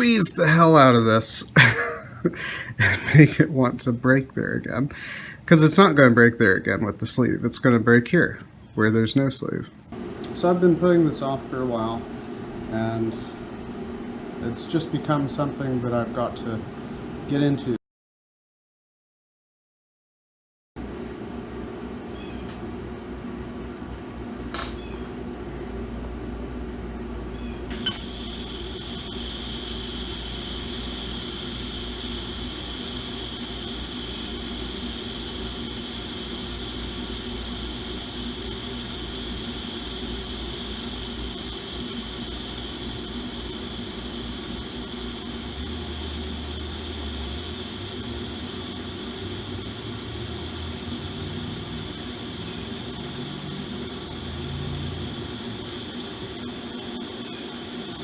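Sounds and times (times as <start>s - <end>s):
high-pitched arc hiss: 0.0s - 10.5s, 27.4s - 58.0s
welding arc click: 27.7s - 28.2s
welding machine hum: 27.7s - 57.0s.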